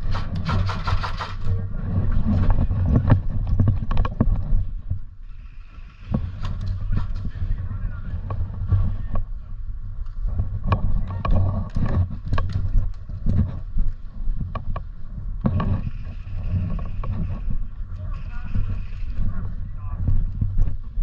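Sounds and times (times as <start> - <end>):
sharp clicks and knocks: 0.0 - 1.6, 2.3 - 4.6, 10.0 - 17.6
wind rumble on microphone: 0.0 - 21.0.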